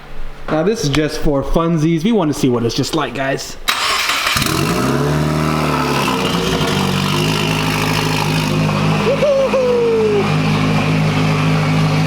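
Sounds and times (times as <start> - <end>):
loud unmuffled car engine idling: 4.0 - 12.0.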